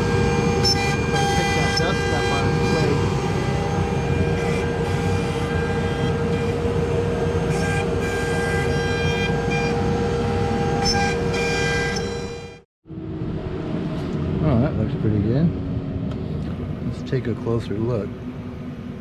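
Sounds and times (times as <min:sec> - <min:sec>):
router bit cutting wood: 0:00.0 - 0:12.6
router spindle whine: 0:00.0 - 0:12.6.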